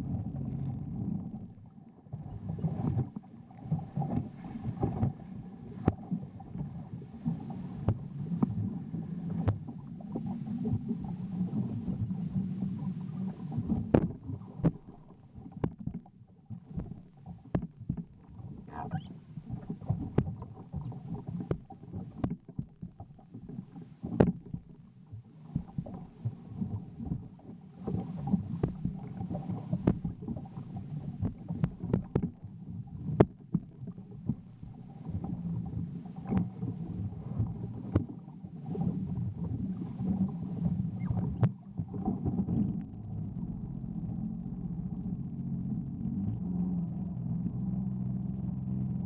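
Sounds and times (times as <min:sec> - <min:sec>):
jet ski engine rumble: 0:00.0 - 0:24.9, 0:25.5 - 0:49.0
hull knocks and thumps: 0:13.6 - 0:14.9, 0:29.8 - 0:30.2.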